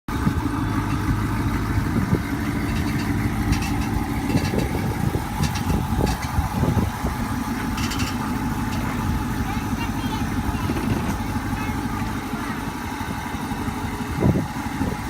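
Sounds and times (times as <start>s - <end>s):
car engine idling: 0.1s - 15.0s.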